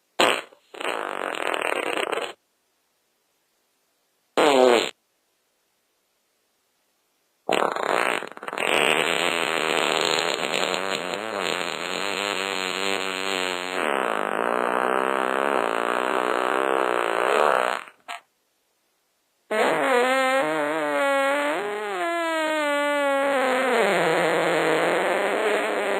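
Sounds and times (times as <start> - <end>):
farting: 0.2 - 2.4, 4.4 - 5.0, 7.5 - 18.3, 19.5 - 25.9.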